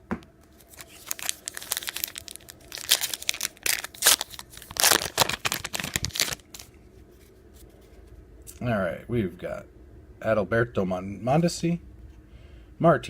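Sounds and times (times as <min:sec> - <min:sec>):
card pack wrapper crinkling and tearing: 0:00.5 - 0:06.7.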